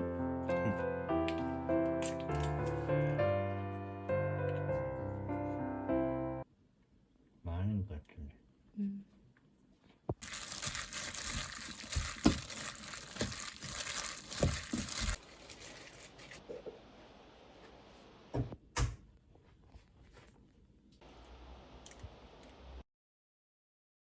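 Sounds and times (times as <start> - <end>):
crinkling rustling handling noise: 10.2 - 16.6.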